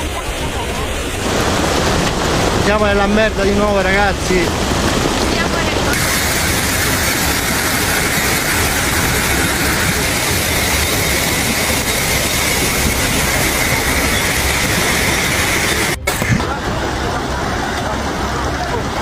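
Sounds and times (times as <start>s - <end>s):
rushing floodwater roar: 0.0s - 19.0s.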